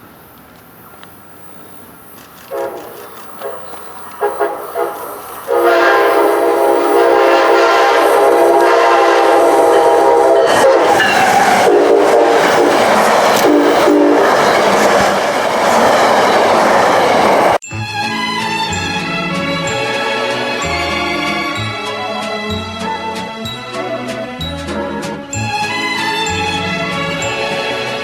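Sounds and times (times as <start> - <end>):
passing train noise: 0.0 - 28.0
train air horn: 2.5 - 14.3.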